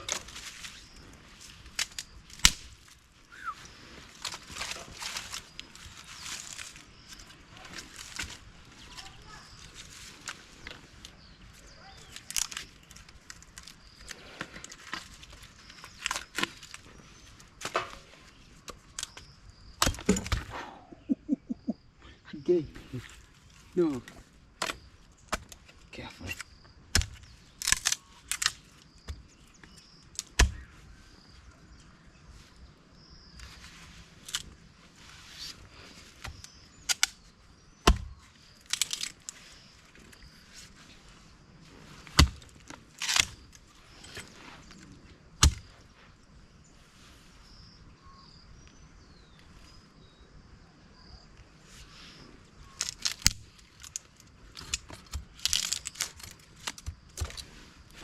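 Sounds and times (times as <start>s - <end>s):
sharp knocks and cracks: 1.7s - 3.0s, 17.6s - 20.6s, 24.6s - 30.8s, 36.2s - 39.4s, 42.0s - 44.3s, 45.4s - 45.8s, 52.8s - 57.5s
faint high chirping: 3.2s - 13.0s.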